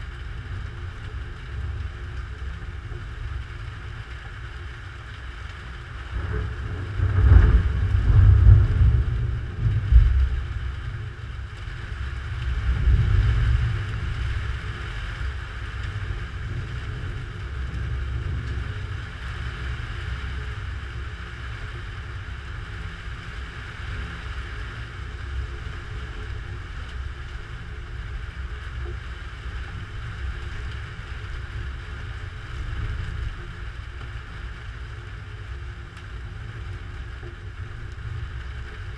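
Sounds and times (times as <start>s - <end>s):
thunder rumbling: 6.0s - 19.2s.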